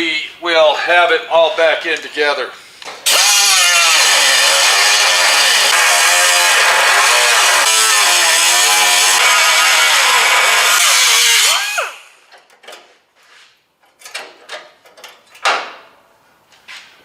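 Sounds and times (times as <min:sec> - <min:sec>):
cut-off tool cutting sheet steel: 0:03.1 - 0:12.2.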